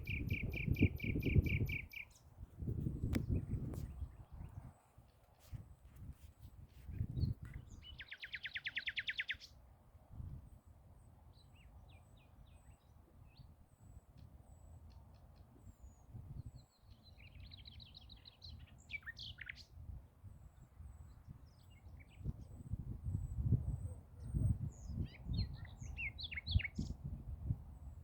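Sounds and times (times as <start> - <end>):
bird trill: 0.0 - 2.2
songbirds chirping: 0.0 - 2.4, 6.9 - 9.8, 10.4 - 28.0.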